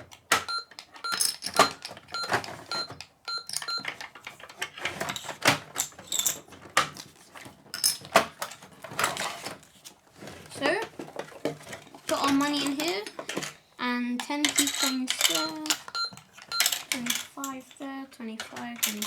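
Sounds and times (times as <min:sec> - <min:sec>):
plastic toy clicks and clatter: 0:00.0 - 0:19.0
toy keypad electronic beeps: 0:00.3 - 0:03.9, 0:14.5 - 0:16.8.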